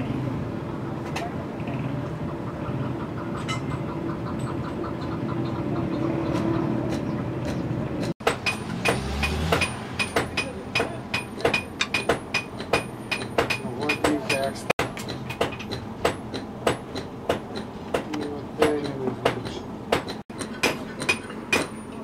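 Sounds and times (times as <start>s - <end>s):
hammer striking metal: 6.9s - 22.0s.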